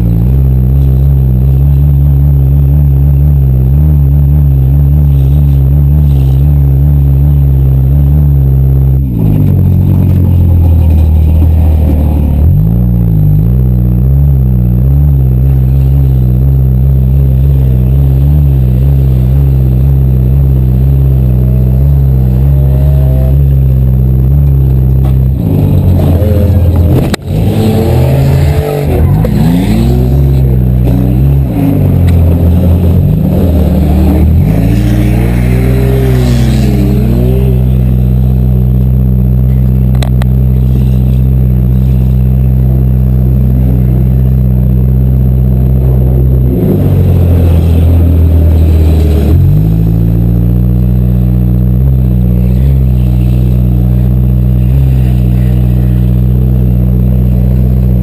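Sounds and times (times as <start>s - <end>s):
car engine revving: 0.0s - 58.0s.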